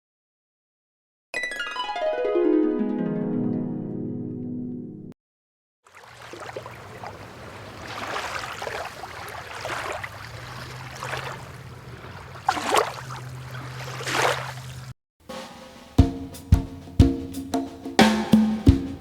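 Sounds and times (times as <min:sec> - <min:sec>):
loud splashes: 0:05.9 - 0:14.8
water rushing and splashing: 0:05.9 - 0:14.9.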